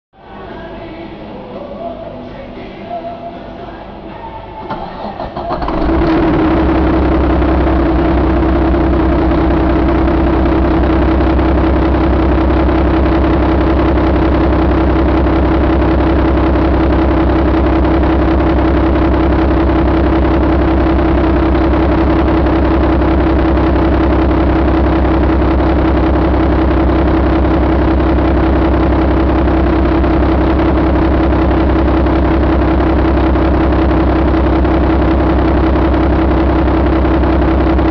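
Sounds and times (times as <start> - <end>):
diesel engine starting and idling: 4.3 - 37.9.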